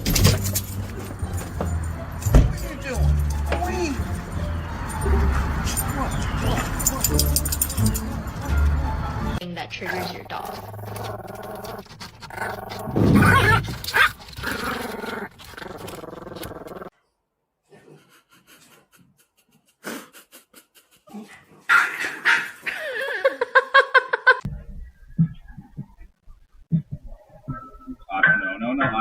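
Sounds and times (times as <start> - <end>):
dog growling and barking: 9.8 - 16.9
dog pitched calls: 10.0 - 16.9.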